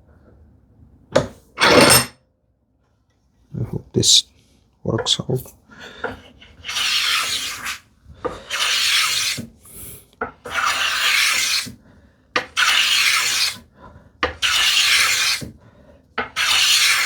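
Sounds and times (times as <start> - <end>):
hand plane cutting wood: 6.1 - 9.6, 10.3 - 11.8, 12.4 - 15.6, 16.2 - 17.0.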